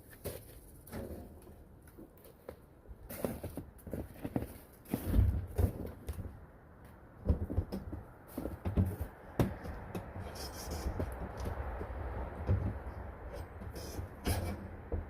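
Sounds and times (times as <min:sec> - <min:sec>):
knocks and scrapes among debris: 0:03.1 - 0:06.4.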